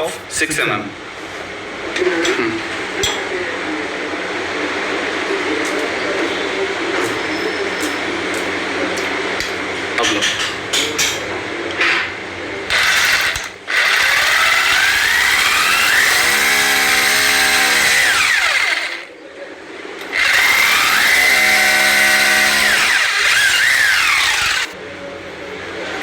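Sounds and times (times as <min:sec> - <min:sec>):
electric drill whining: 0:12.7 - 0:19.1, 0:20.1 - 0:24.8.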